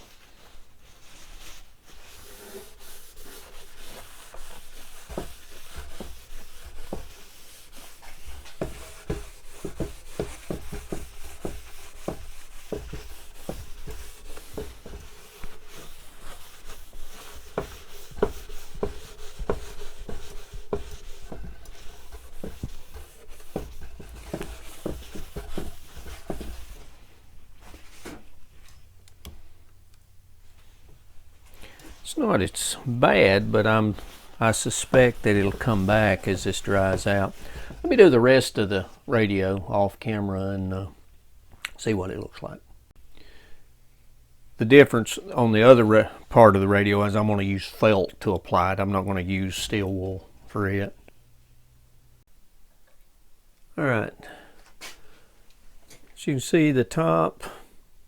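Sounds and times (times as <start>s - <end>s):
paper towel rubbing on wood: 0.0s - 28.5s, 31.7s - 39.6s.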